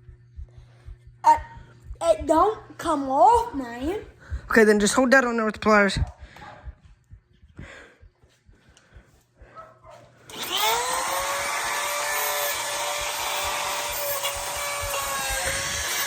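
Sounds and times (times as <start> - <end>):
power tool whining: 10.1 - 16.0.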